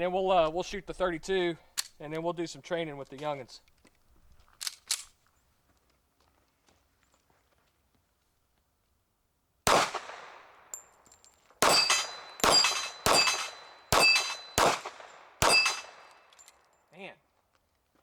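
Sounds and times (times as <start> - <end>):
pistol shots: 9.7 - 10.7, 11.6 - 16.2
steel target ringing: 11.6 - 14.8, 15.4 - 16.0.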